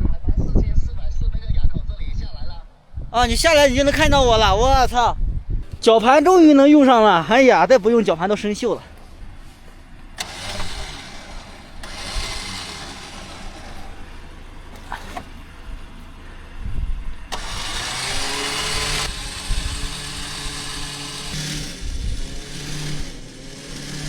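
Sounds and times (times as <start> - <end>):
car engine idling: 5.6 - 24.0.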